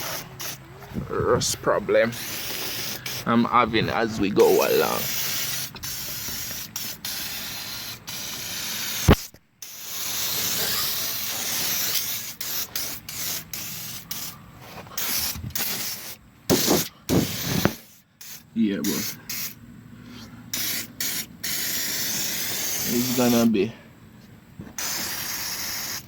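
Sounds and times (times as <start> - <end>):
aerosol spray can hissing: 0.0 - 0.6, 2.1 - 3.3, 4.4 - 14.3, 15.0 - 19.6, 20.6 - 23.5, 24.8 - 26.0.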